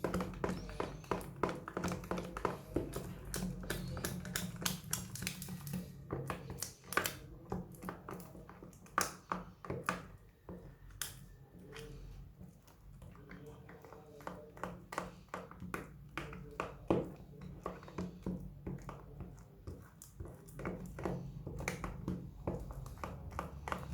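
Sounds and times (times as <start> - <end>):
slime clicking and popping: 0.0 - 10.1, 10.8 - 11.4.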